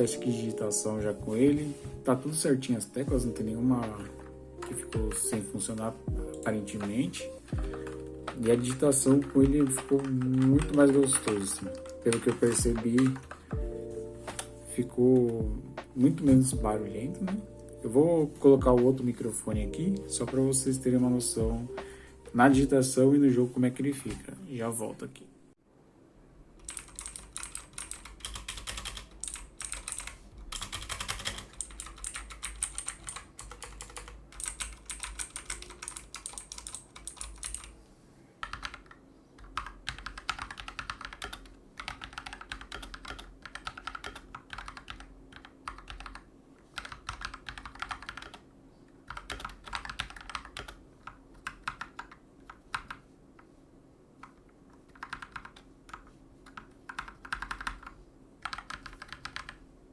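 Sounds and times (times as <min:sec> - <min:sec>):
mechanical keyboard typing: 0:03.9 - 0:13.6, 0:26.6 - 0:37.7, 0:38.4 - 0:48.4, 0:49.1 - 0:53.0, 0:54.2 - 0:59.6.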